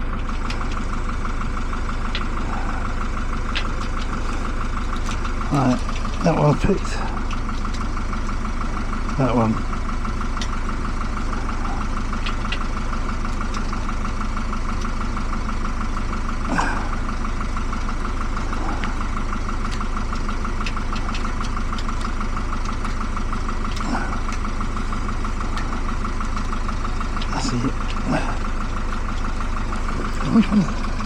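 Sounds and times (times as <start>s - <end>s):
steady mechanical drone: 0.0s - 31.0s
faint clicks: 0.1s - 15.3s, 16.5s - 31.0s.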